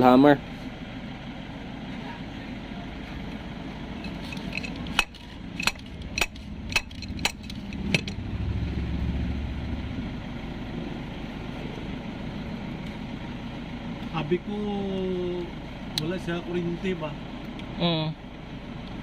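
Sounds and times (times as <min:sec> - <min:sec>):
low rumble: 0:03.9 - 0:13.2
wrench knocking on metal: 0:04.5 - 0:08.2.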